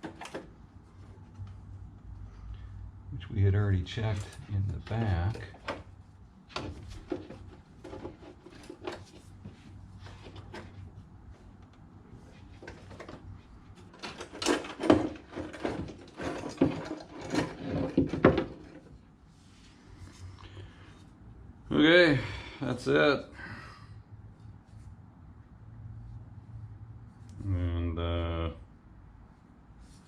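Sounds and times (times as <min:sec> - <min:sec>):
tools knocking and clattering: 0:00.0 - 0:00.5, 0:06.5 - 0:09.2, 0:12.6 - 0:18.9.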